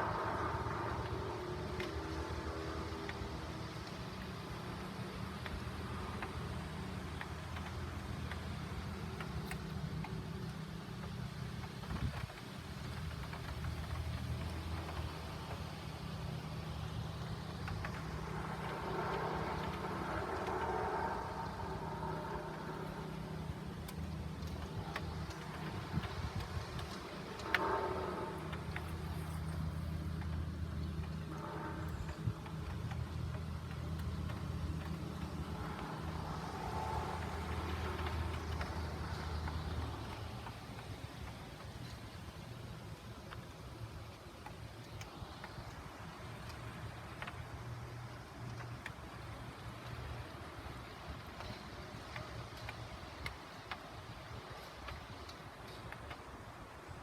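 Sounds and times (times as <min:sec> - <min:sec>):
engine idling: 0:00.0 - 0:41.2
approaching vehicle engine: 0:00.0 - 0:42.5
faint rain ticking: 0:00.0 - 0:57.0.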